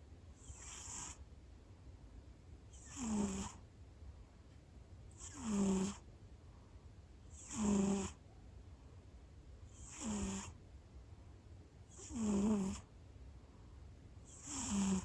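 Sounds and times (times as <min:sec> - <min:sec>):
cat snoring: 0:00.4 - 0:01.2, 0:02.7 - 0:03.6, 0:05.1 - 0:06.1, 0:07.3 - 0:08.2, 0:09.7 - 0:10.6, 0:11.9 - 0:12.9, 0:14.3 - 0:15.0.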